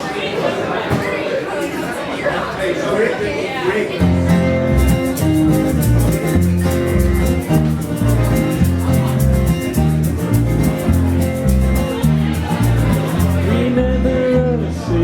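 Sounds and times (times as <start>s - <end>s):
electric guitar: 4.1s - 15.0s
walking bass line: 4.1s - 15.0s
steady fast ticking: 4.8s - 13.5s.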